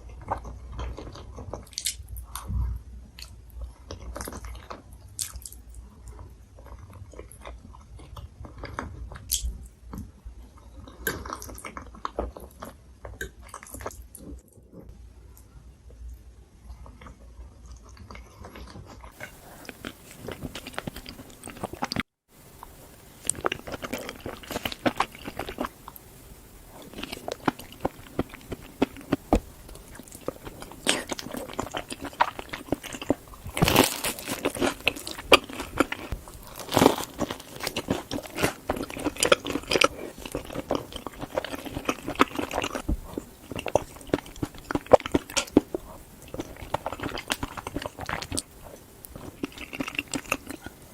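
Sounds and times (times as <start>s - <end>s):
person chewing food: 0.0s - 2.5s, 3.2s - 14.4s, 16.8s - 50.9s.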